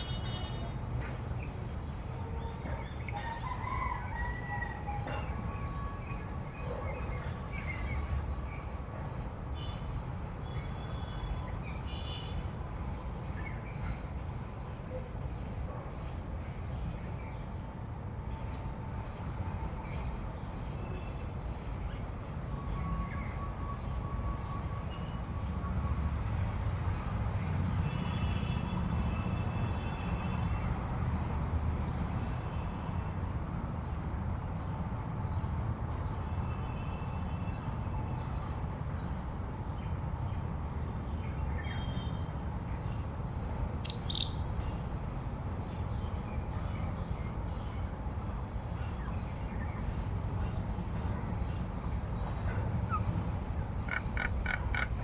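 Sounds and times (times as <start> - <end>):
crickets chirping: 0.0 - 55.0
short bird chirps: 43.9 - 44.4.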